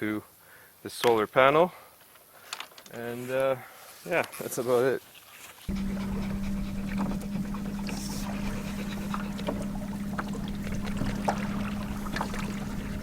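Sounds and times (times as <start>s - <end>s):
electric trolling motor hum: 5.7s - 13.0s
water washing along hull: 5.7s - 13.0s.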